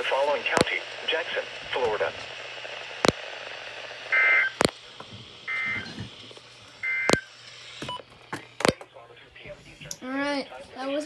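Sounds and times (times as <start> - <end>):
sharp clicks: 3.0 - 3.2, 4.6 - 4.8, 8.6 - 8.9.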